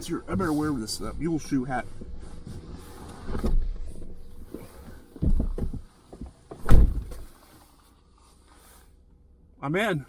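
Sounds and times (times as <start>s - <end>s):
dull thumps and rustles: 2.4s - 7.6s
truck door slamming: 6.5s - 7.4s.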